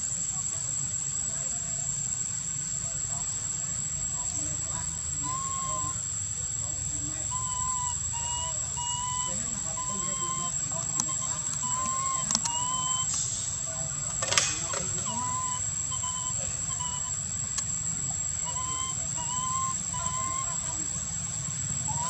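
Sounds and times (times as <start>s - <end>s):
baby monkey crying: 7.3s - 13.2s, 15.0s - 17.2s, 18.4s - 21.0s
sharp click: 14.1s - 14.9s.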